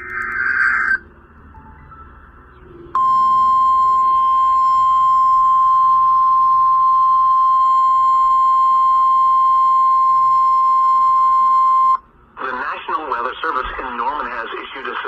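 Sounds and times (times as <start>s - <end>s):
steady high alarm tone: 2.9s - 12.0s.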